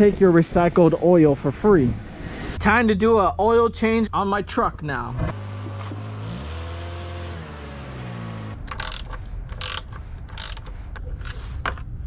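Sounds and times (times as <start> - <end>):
ratchet wrench clicking: 8.6 - 11.0.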